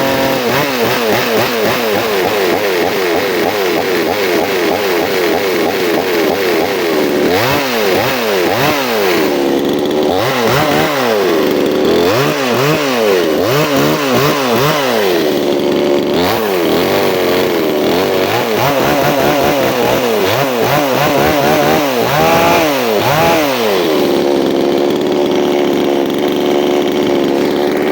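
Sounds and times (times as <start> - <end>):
chainsaw engine revving: 0.0 - 27.9.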